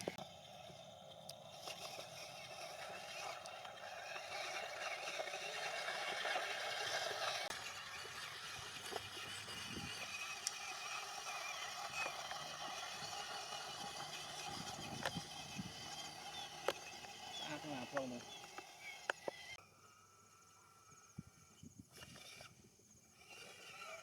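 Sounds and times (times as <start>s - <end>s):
small electric motor whining: 0.0s - 24.0s.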